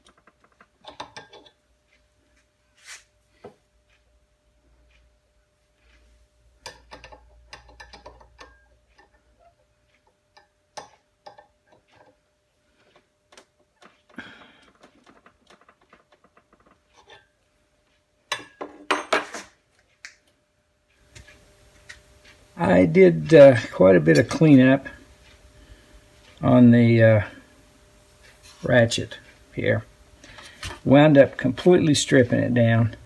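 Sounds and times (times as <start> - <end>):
metallic clanks: 23.3 - 25.0.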